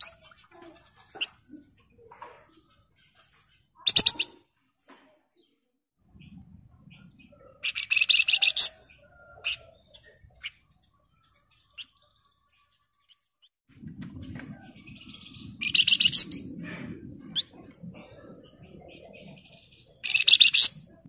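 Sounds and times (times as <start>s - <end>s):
songbird chattering trills: 3.7s - 4.4s, 7.0s - 12.2s, 14.9s - 16.6s, 17.2s - 21.0s.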